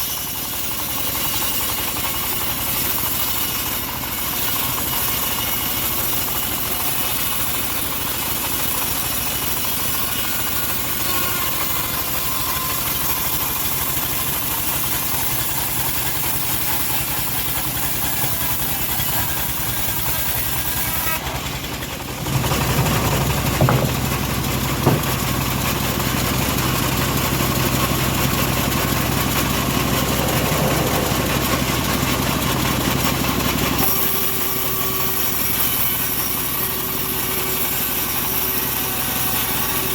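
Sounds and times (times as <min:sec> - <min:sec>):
bandsaw sawmill cutting wood: 0:00.0 - 0:39.9
sharp knocks: 0:22.2 - 0:25.8.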